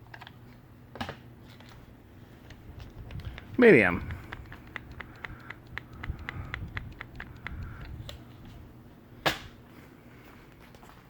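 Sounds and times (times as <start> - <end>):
ceiling fans humming: 0.0 - 11.0
quick even ticking: 3.0 - 8.2.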